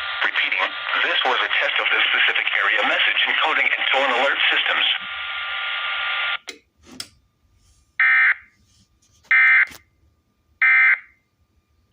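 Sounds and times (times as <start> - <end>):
radio static hiss: 0.0 - 6.4.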